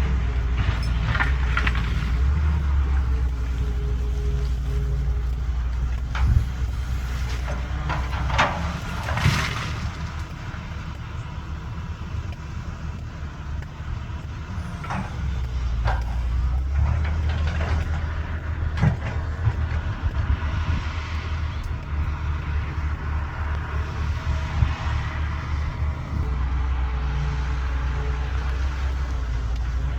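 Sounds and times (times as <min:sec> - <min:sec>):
excavator diesel engine running: 0:00.0 - 0:29.9
sharp clanks and knocks: 0:05.3 - 0:10.4, 0:14.5 - 0:20.3.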